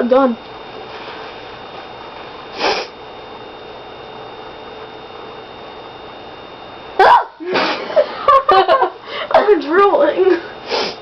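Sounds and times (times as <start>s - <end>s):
faint steady hum: 0.0s - 11.0s
person sniffing sharply: 2.5s - 3.0s, 10.6s - 11.0s.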